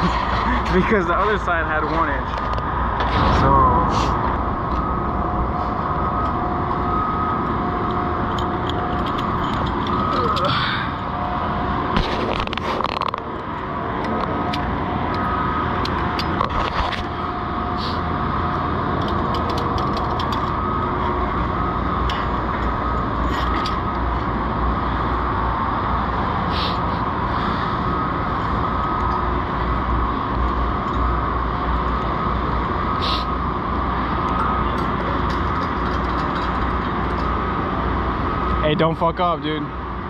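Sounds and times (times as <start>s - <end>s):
machinery drone: 0.0s - 40.0s
scattered clicks and knocks: 6.2s - 10.5s, 11.9s - 17.2s, 18.9s - 21.1s, 34.2s - 37.4s.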